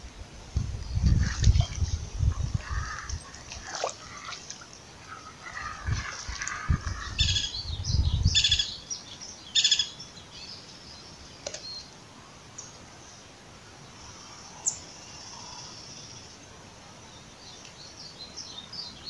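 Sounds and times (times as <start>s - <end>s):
steady outdoor hiss: 0.0s - 19.0s
birds chirping: 0.7s - 11.9s.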